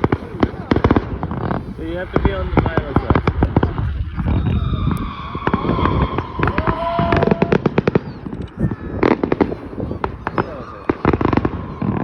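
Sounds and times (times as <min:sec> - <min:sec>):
fireworks bangs and crackling: 0:00.0 - 0:12.0
whistle-like firework tone: 0:03.6 - 0:12.0.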